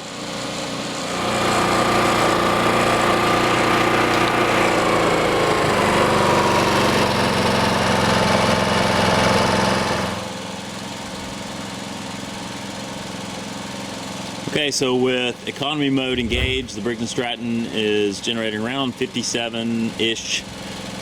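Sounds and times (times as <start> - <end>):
generator engine running: 0.0 - 9.8.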